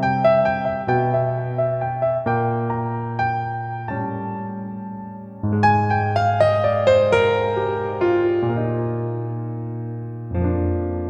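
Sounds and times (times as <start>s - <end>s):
piano music: 0.0s - 11.0s.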